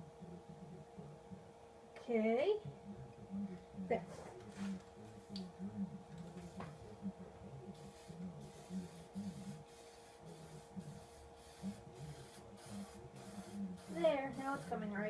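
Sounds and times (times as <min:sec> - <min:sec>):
spray paint can hissing: 0:07.8 - 0:14.8.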